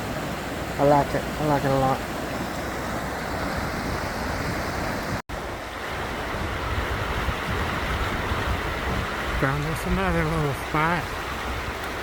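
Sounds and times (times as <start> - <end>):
stream rushing: 0.0 - 12.0
wind rumbling on microphone: 0.0 - 12.0.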